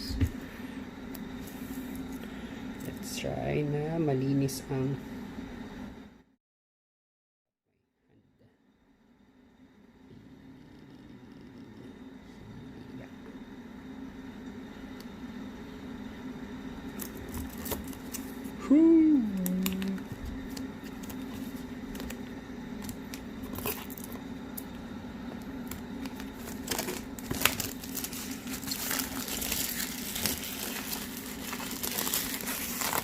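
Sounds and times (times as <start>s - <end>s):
plastic wrapping crinkling and tearing: 17.0s - 18.4s, 19.4s - 22.2s, 22.8s - 24.2s, 25.6s - 33.0s
person humming: 18.6s - 20.2s.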